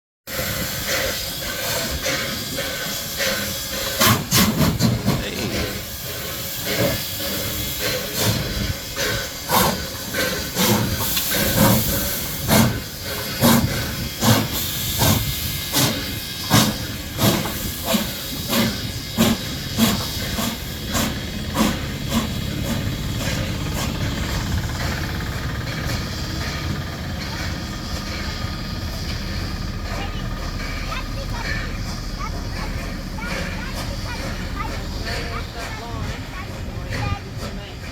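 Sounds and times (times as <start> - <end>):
steam hiss: 0.3 - 37.9
steam locomotive exhaust chuffs: 0.3 - 37.9.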